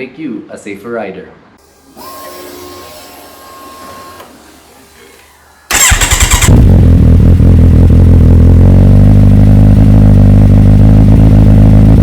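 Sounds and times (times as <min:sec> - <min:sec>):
motorcycle engine starting and idling: 0:03.8 - 0:12.0.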